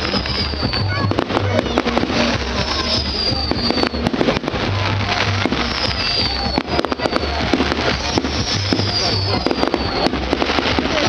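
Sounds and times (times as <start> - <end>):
fairground music with pulsing bass: 0.0 - 11.0
firework whistles falling in pitch: 0.0 - 11.0
fireworks bangs and pops: 0.0 - 11.0.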